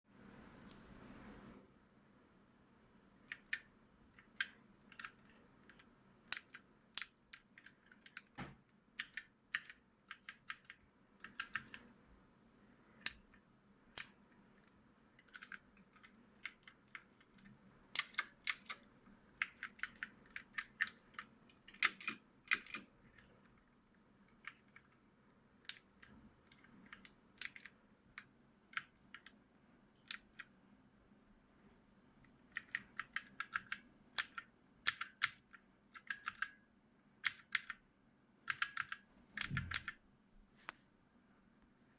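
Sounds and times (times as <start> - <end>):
mechanical keyboard key clicks: 32.6 - 36.6, 37.2 - 37.8, 38.5 - 40.0.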